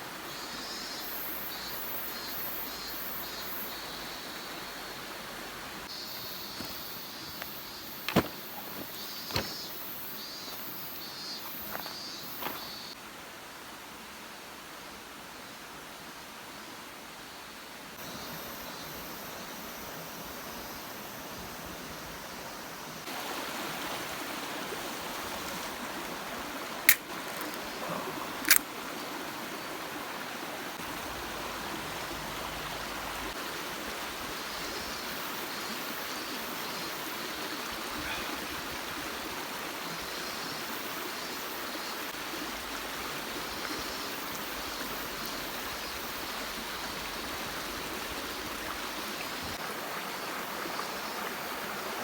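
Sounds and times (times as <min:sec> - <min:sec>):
flowing water rushing: 0:11.5 - 0:52.0
sharp clicks: 0:26.9 - 0:27.6, 0:28.4 - 0:28.6.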